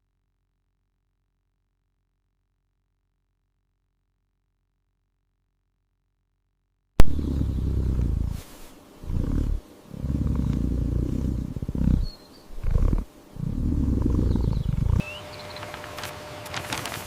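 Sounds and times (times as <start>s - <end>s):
cat purring: 7.0s - 15.1s.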